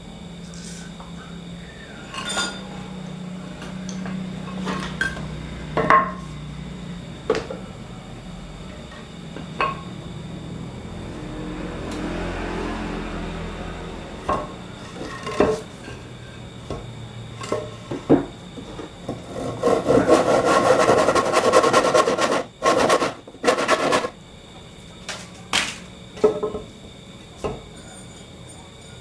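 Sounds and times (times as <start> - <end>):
rasping on wood: 19.3 - 24.1
short scrapes: 19.4 - 24.1.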